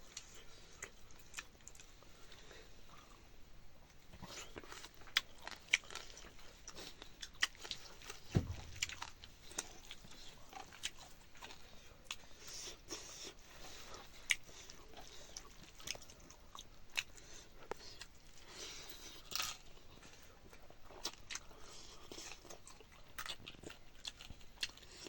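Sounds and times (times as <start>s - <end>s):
person chewing crunchy food: 0.1s - 3.2s, 4.2s - 25.0s
dull thump: 8.3s - 9.2s.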